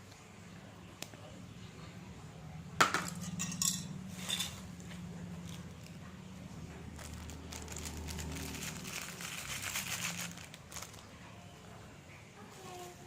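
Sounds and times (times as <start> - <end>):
plastic wrapping crinkling: 6.8 - 11.4.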